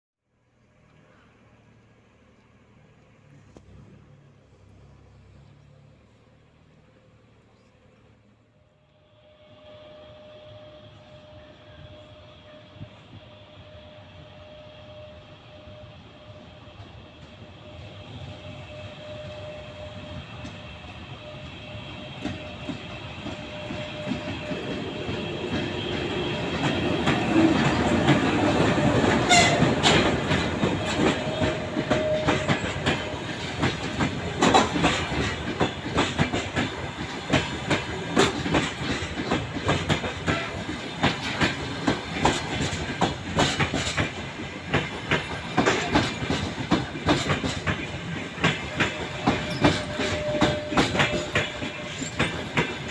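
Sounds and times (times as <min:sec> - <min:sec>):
train whine: 0:00.3 - 0:52.9
wheels clicking over rail joints: 0:22.1 - 0:52.9.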